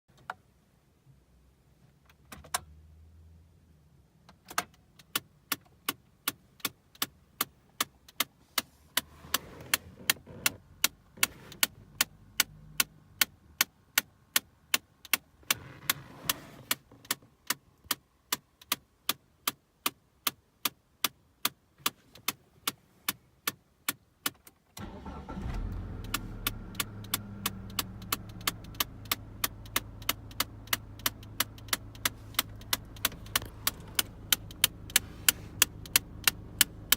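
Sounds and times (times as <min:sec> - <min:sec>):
car engine idling: 0:24.8 - 0:36.9.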